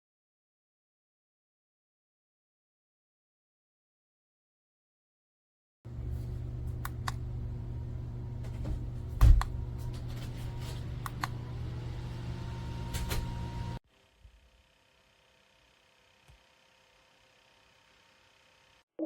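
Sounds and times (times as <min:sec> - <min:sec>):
small fan humming: 0:05.9 - 0:18.8
light clicks: 0:06.7 - 0:07.3, 0:11.0 - 0:11.4.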